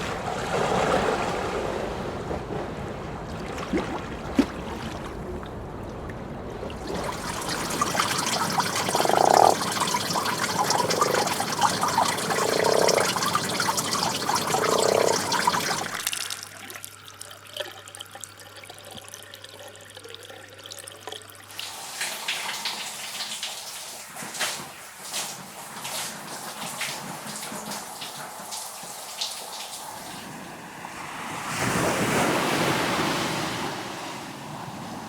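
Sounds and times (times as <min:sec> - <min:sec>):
low gurgling tones: 0:03.1 - 0:21.3
water splashes and drips: 0:03.3 - 0:30.2
running water splashing: 0:06.7 - 0:17.0
water trickling: 0:06.7 - 0:24.0.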